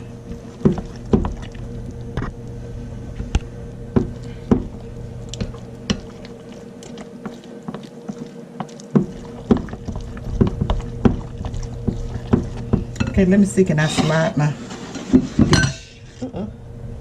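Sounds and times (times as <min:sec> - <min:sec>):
steady low hum: 0:00.0 - 0:17.0
spoon stirring thick sauce: 0:04.0 - 0:13.0.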